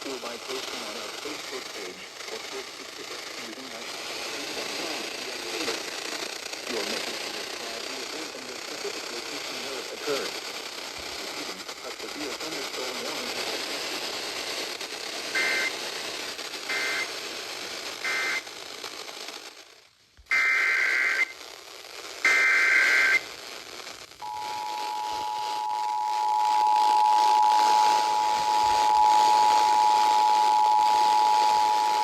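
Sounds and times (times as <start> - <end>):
warbling data bursts: 0.0 - 19.5, 24.2 - 32.0
two-tone attention signal: 24.2 - 32.0.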